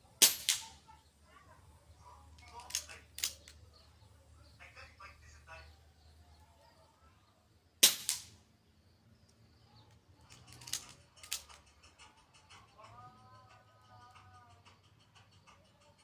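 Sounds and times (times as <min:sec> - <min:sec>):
air rifle shot: 0:00.2 - 0:00.7, 0:07.8 - 0:08.4.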